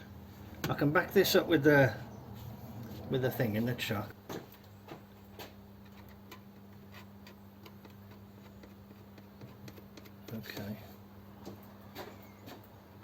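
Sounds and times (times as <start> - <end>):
low electrical hum: 0.0 - 13.0
tooling clicks and taps: 4.3 - 10.7.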